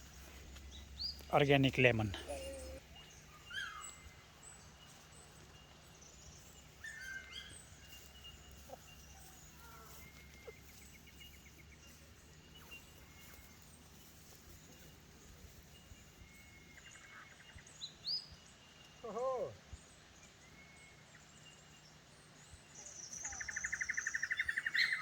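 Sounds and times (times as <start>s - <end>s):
small birds chirping: 0.0s - 25.0s
bird trill: 1.9s - 4.2s.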